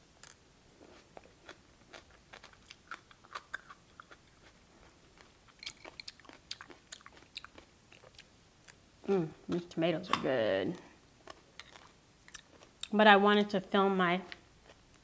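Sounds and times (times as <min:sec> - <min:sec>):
person chewing crunchy food: 0:00.2 - 0:08.8, 0:10.8 - 0:12.9.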